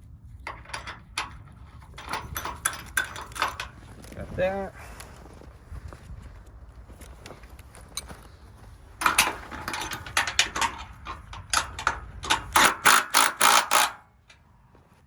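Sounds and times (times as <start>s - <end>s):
metal cable hardware clicking: 0.5s - 4.2s, 9.0s - 14.4s.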